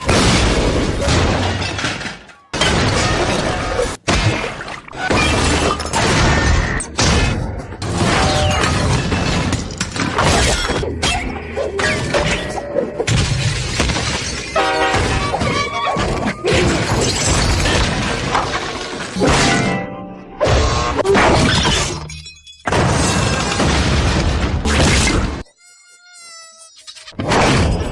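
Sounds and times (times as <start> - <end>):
glass shattering: 13.1 - 15.9, 16.6 - 20.2, 21.2 - 24.1.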